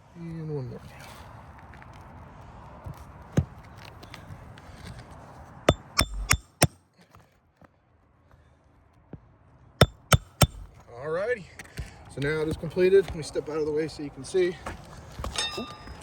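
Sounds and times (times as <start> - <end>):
hammer striking roofing nail: 5.7 - 6.8, 9.8 - 10.7.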